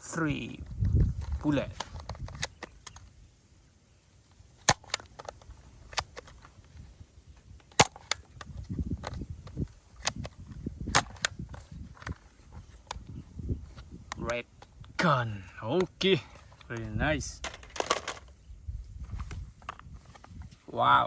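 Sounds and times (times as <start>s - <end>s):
handling rustle: 0.4s - 3.5s, 4.1s - 21.0s
toy gun spring clicks: 1.8s - 3.1s, 4.6s - 6.4s.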